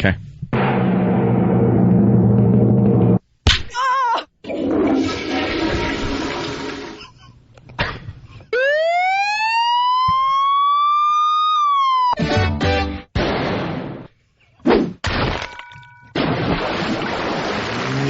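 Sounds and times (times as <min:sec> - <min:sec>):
rising siren-like wail: 0:08.6 - 0:12.2
splashing wash: 0:16.5 - 0:18.0.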